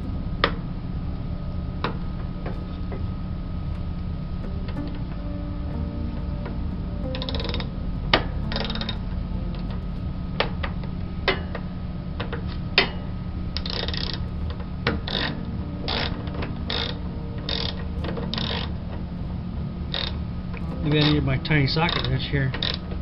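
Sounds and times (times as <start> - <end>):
steady low hum: 0.0 - 23.0
ratchet clicking and scraping: 6.1 - 11.6, 13.6 - 19.1, 19.8 - 23.0.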